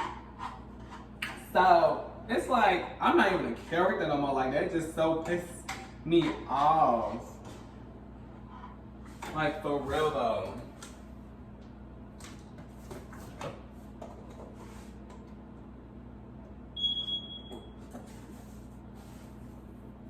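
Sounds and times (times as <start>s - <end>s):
high-pitched electronic beep: 16.8s - 17.7s.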